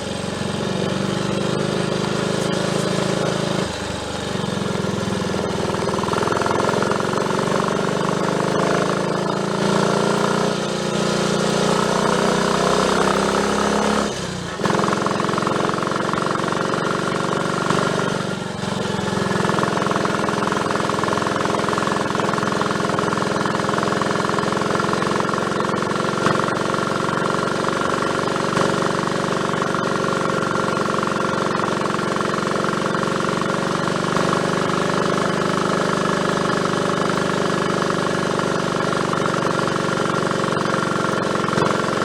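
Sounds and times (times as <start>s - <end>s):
motorcycle engine running: 0.0s - 42.0s.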